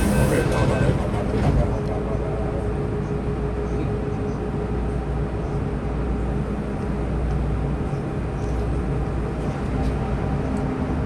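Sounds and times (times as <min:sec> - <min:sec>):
train wheels rumbling: 0:00.0 - 0:05.2
train equipment hum: 0:00.0 - 0:11.0.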